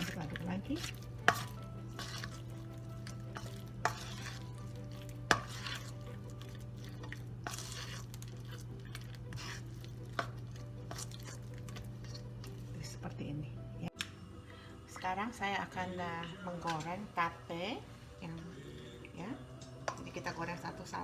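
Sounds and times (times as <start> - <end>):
spoon stirring batter: 0.0 - 12.9, 18.3 - 21.0.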